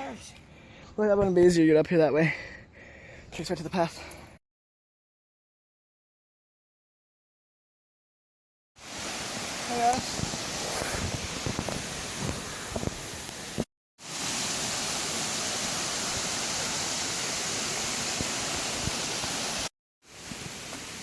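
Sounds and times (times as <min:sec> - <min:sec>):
rushing water: 0:08.8 - 0:21.0.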